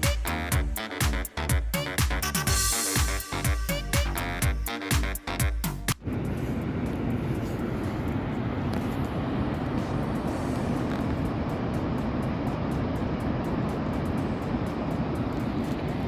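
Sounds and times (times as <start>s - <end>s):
electronic dance music: 0.0s - 5.9s.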